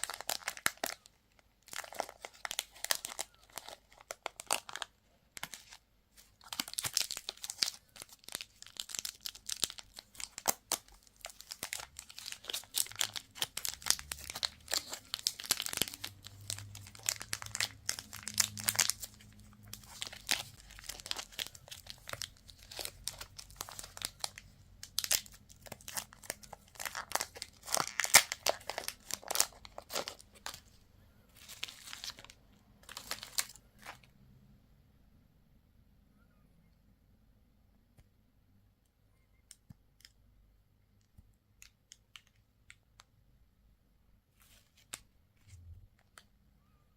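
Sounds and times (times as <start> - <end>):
candy wrappers crinkling: 0.0 - 34.1.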